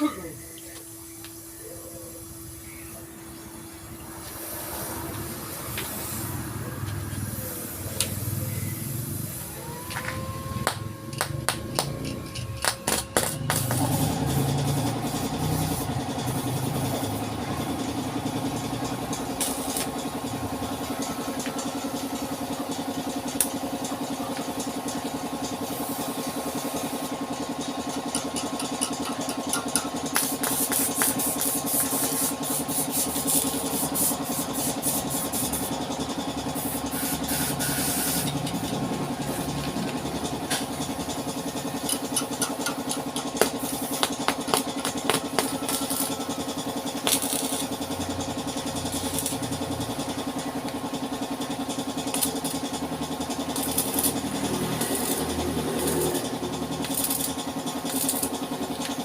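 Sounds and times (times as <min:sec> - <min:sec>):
car engine starting and idling: 0:35.6 - 0:59.0.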